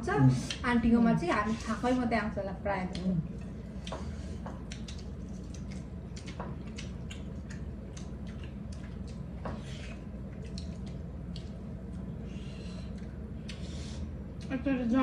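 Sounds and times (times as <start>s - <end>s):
steady low hum: 0.0s - 15.0s
wet chewing and mouth smacking: 2.9s - 14.6s.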